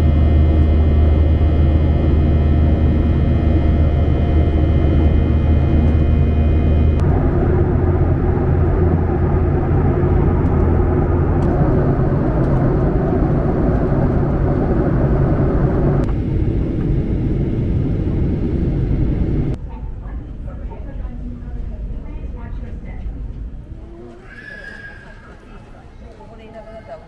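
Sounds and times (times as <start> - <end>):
jet engine whining tones: 0.0 - 19.6
jet airliner rumble: 0.0 - 25.9.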